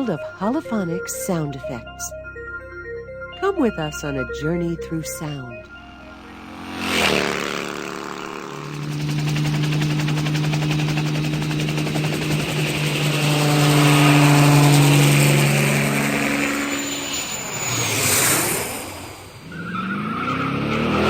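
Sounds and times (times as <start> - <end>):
aircraft engine with chopping beat: 4.7 - 19.5.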